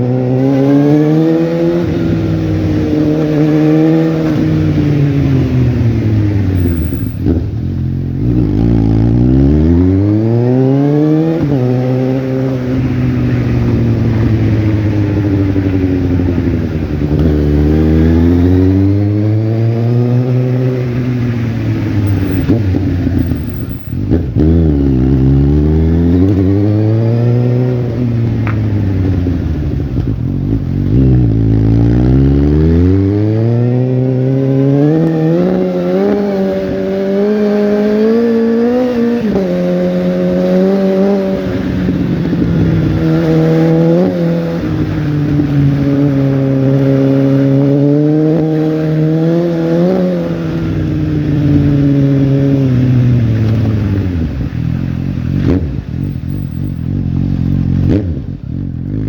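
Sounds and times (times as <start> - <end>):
motorcycle engine revving: 0.0 - 59.0.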